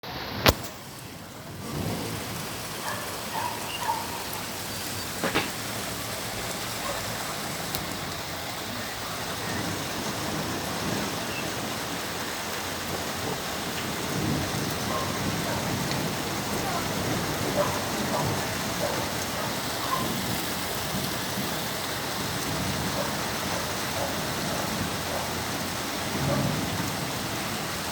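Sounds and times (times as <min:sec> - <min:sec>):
rain pattering on a surface: 0:00.0 - 0:27.9
single raindrop ticks: 0:07.7 - 0:08.2.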